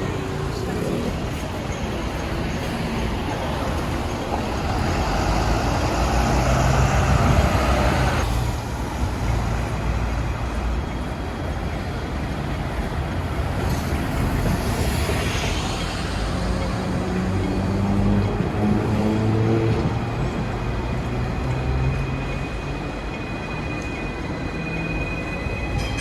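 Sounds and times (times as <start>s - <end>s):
heavy vehicle engines droning: 0.0s - 12.2s.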